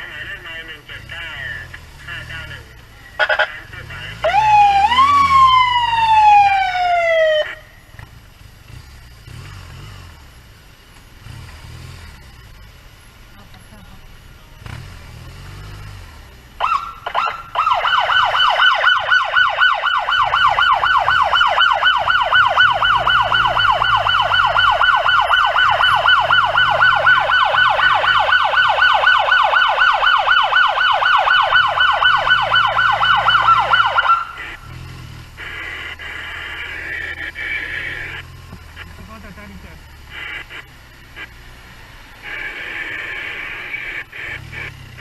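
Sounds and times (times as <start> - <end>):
low rumble of traffic: 0.0 - 45.0
ambulance siren yelping: 3.1 - 7.8, 16.6 - 38.3.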